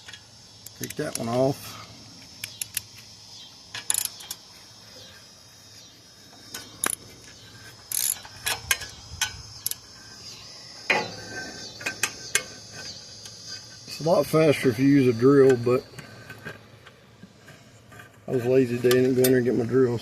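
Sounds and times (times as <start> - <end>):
hand tool metallic clicks: 2.4 - 2.9, 6.6 - 7.0.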